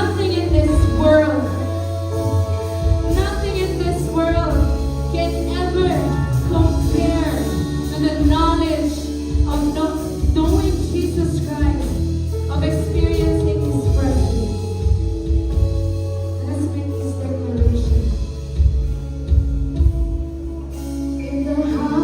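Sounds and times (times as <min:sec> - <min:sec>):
woman singing lead: 0:00.0 - 0:14.9, 0:21.2 - 0:22.0
live worship band playing: 0:00.0 - 0:22.0.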